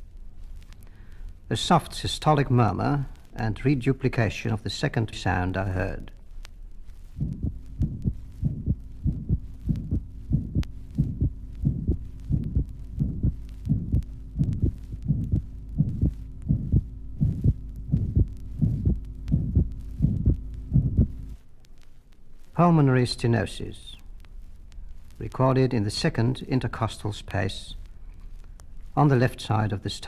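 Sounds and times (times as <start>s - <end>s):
faint steady hum: 0.0s - 30.0s
soft heart murmur: 5.8s - 22.6s
fast heartbeat: 7.1s - 21.4s.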